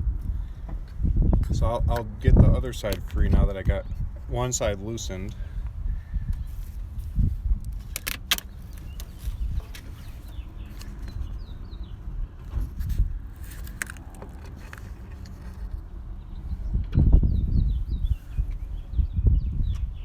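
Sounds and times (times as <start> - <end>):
plastic and metal clicks and rattles: 2.8 - 3.2, 7.6 - 11.2, 12.8 - 15.7.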